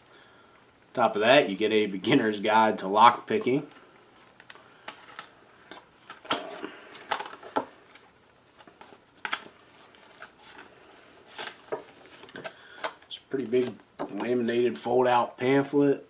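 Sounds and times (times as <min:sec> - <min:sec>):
laminated pamphlet crinkling: 0:06.8 - 0:13.8.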